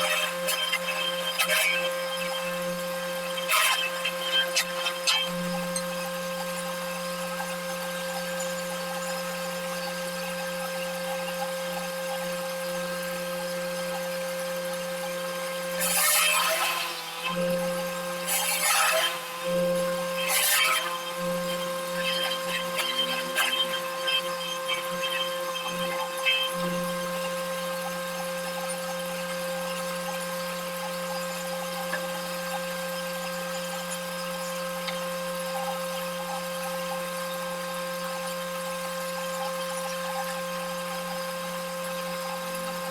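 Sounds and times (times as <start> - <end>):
machine motor hum: 0.0 - 31.1
cutter rushing through wood: 0.0 - 36.0.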